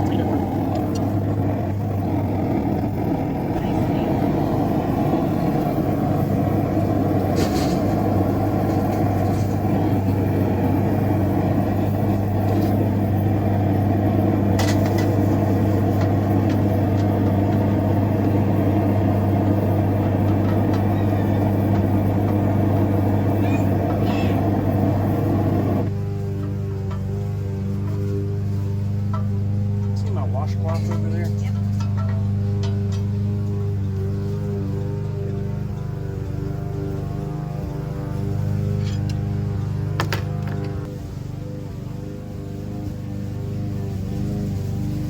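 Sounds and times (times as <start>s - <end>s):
low hum: 0.0s - 26.1s.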